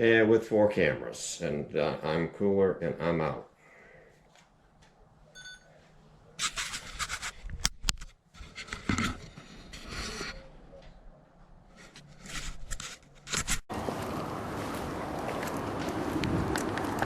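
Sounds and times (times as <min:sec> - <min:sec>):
rustling and scraping: 0:06.4 - 0:17.0.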